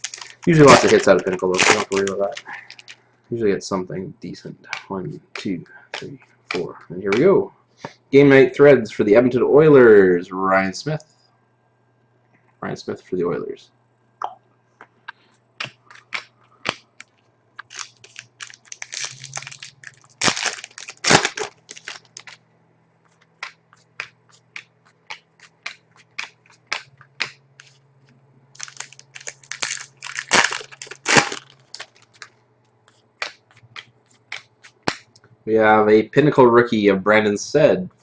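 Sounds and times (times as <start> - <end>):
foil wrappers tearing: 0.0 - 3.0, 17.6 - 22.4, 28.6 - 32.3
cards clicking as flipped: 23.3 - 27.8, 32.9 - 35.2.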